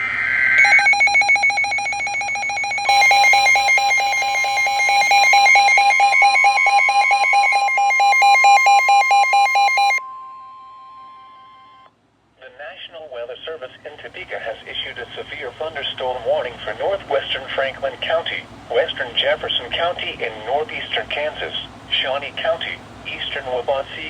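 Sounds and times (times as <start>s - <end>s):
steady high alert tone: 0.0s - 10.8s
pulsing electronic alarm: 0.0s - 11.9s.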